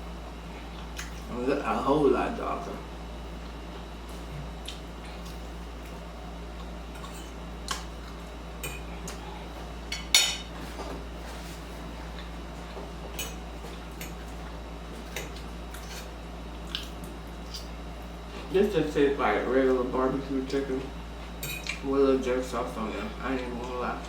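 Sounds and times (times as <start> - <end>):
utensil clinking against dish: 21.4 - 21.8.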